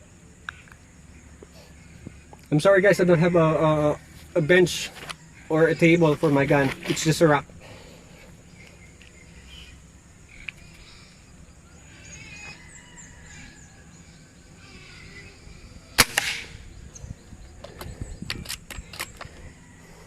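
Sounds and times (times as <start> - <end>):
faint bird chirps: 0.0 - 20.0
air rifle shot crack: 16.0 - 16.8.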